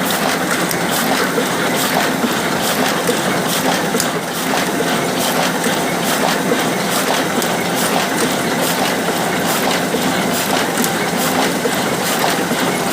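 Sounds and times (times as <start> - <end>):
printing press clattering: 0.0 - 12.9.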